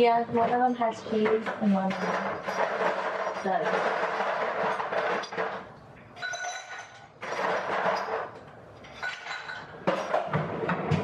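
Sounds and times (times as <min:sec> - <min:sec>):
dishes being handled: 0:00.0 - 0:11.0
glassy clinks: 0:06.2 - 0:07.1, 0:08.8 - 0:10.1.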